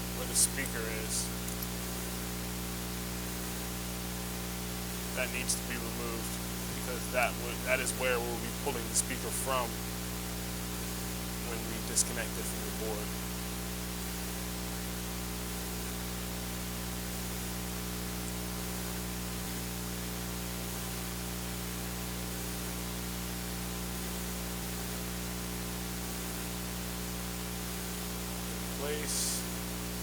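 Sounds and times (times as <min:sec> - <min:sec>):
constant hiss: 0:00.0 - 0:16.7, 0:24.2 - 0:30.0
electrical hum: 0:00.0 - 0:20.0, 0:21.4 - 0:30.0.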